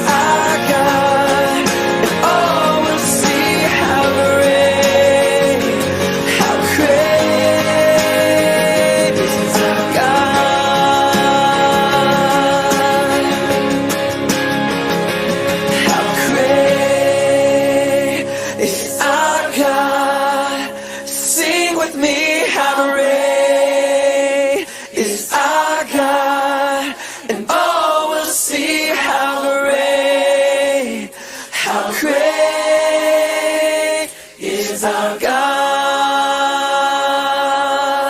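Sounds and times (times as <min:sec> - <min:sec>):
choir singing unaccompanied: 0:00.0 - 0:13.8, 0:15.7 - 0:38.0
singers breathing: 0:05.7 - 0:06.6, 0:18.2 - 0:18.9, 0:20.6 - 0:21.2, 0:24.6 - 0:25.0, 0:26.9 - 0:27.4, 0:31.1 - 0:31.8, 0:34.1 - 0:34.6.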